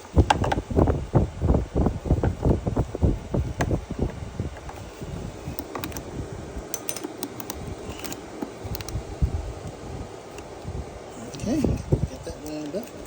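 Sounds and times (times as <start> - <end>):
low thumps and knocks: 0.2 - 4.8
tools clicking: 6.7 - 9.0.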